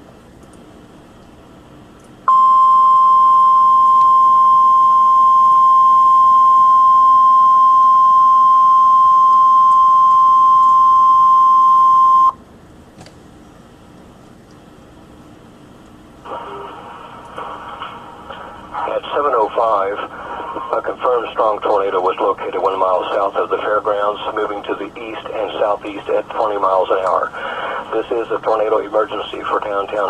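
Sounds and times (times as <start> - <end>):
loud high alarm tone: 2.3 - 12.4
faint radio hiss: 13.6 - 30.0.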